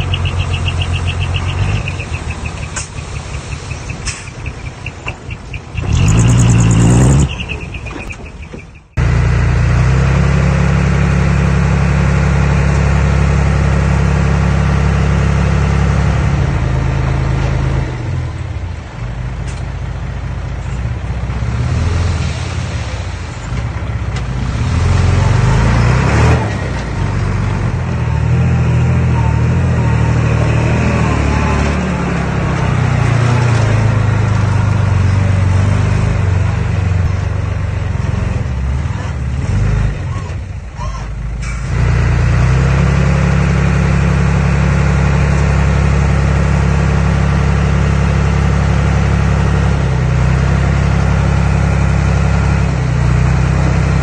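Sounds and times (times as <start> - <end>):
earthmoving machine engine running: 5.8 - 7.4.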